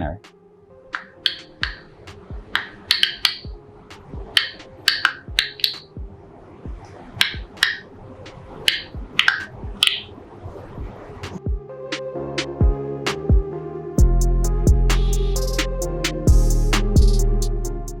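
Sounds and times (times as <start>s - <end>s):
sharp clicks: 0.9s - 5.9s.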